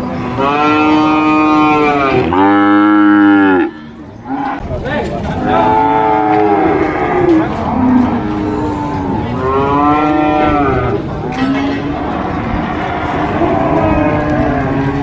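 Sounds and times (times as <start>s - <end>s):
cattle mooing: 0.1s - 4.6s, 5.4s - 15.0s.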